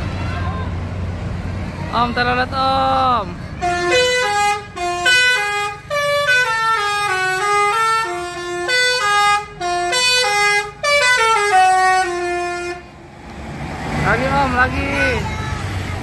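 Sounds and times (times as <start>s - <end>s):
multi-tone bus horn tune: 3.6s - 13.0s.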